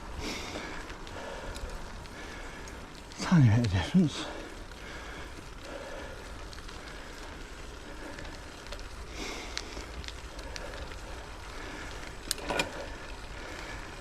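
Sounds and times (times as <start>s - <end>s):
bike tyre rolling on gravel: 0.0s - 14.0s
small clicks: 6.4s - 14.0s.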